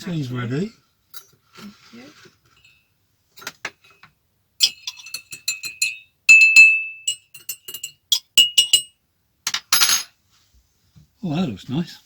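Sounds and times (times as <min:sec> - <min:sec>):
teaspoon clinking in a mug: 0:04.6 - 0:08.9.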